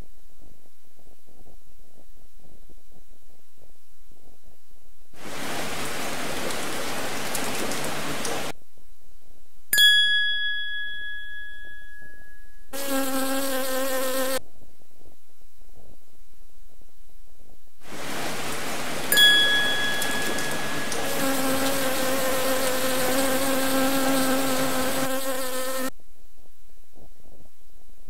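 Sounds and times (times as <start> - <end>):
hiss of noise: 5.2 - 8.5, 17.8 - 25.9
bell-like ding: 9.8 - 12.7, 19.1 - 21.1.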